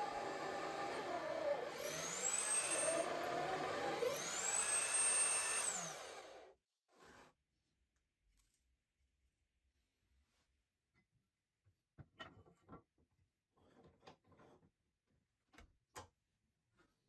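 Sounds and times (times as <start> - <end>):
angle grinder motor whining: 0.0 - 6.5.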